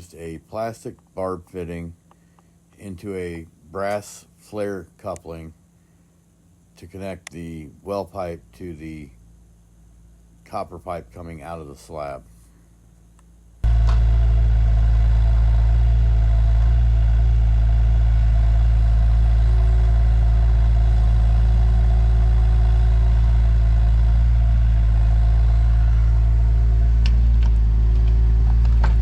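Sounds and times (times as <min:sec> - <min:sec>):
digging machine engine running: 0:13.6 - 0:29.0.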